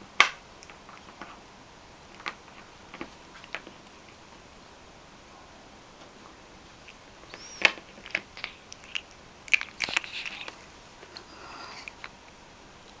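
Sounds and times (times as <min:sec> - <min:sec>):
brief high squeak: 0:07.3 - 0:07.7.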